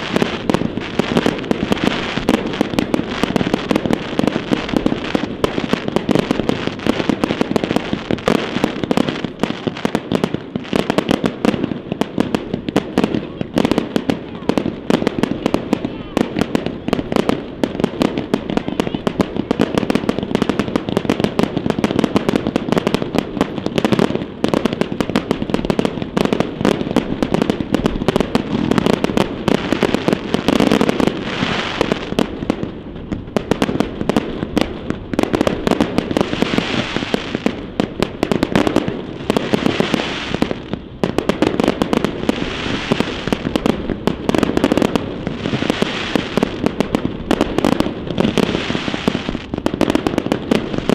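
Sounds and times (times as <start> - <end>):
fireworks bursts and bangs: 0.0 - 50.9
fireworks crackling hiss: 0.0 - 50.9.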